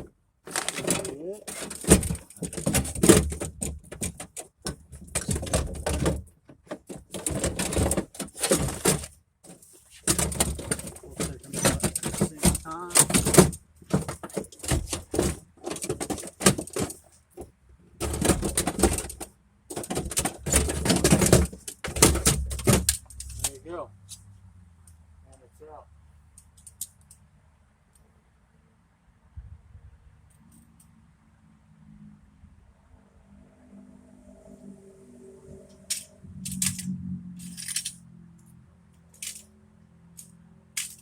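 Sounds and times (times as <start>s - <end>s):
metal parts rattling and clanking: 0.0s - 23.6s, 35.9s - 38.0s, 39.1s - 39.5s, 40.2s - 41.0s.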